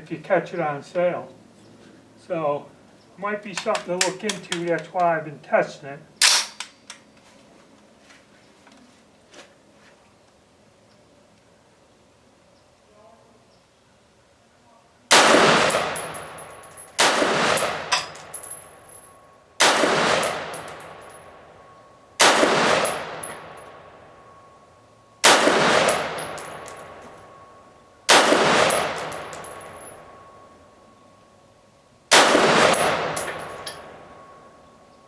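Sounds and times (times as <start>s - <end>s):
rifle shots with echo: 15.1s - 18.6s, 19.6s - 21.3s, 22.2s - 23.8s, 25.2s - 27.2s, 28.1s - 30.0s, 32.1s - 34.0s.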